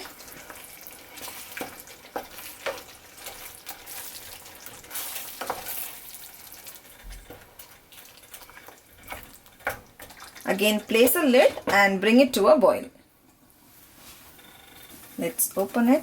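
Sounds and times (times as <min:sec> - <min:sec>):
spoon scraping a pan: 0:00.0 - 0:11.8
food sizzling: 0:00.0 - 0:12.2.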